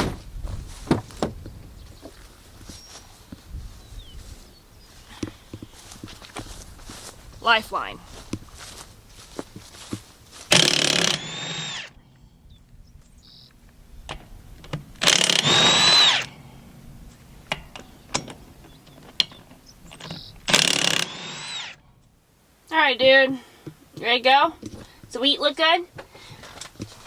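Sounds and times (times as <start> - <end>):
impact wrench hammering: 10.5 - 11.7, 15.0 - 16.3, 20.0 - 21.7
small metallic clicks: 17.1 - 21.2.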